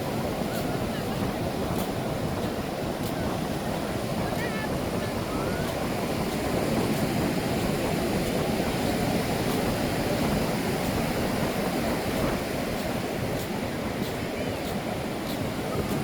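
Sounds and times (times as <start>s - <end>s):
ocean waves breaking on beach: 0.0s - 16.0s.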